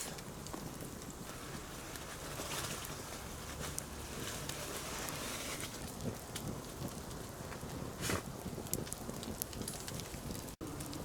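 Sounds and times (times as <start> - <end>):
campfire crackling: 0.0 - 11.0.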